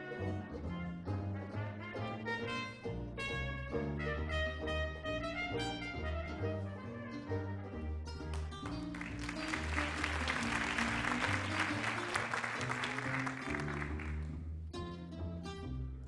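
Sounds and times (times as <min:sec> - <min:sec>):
small jazz band playing: 0:00.0 - 0:14.2
walking bass: 0:00.0 - 0:16.0
audience applauding: 0:08.3 - 0:14.3.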